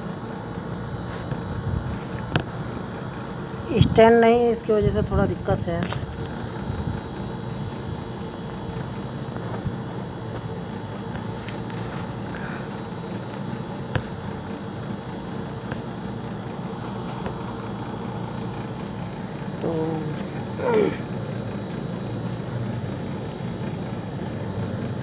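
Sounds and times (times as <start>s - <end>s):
background machinery hum: 0.0s - 25.0s.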